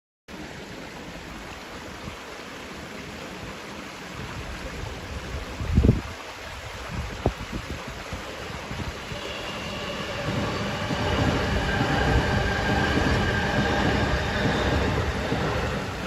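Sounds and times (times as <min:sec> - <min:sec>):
electric train rumbling: 0:08.3 - 0:16.0.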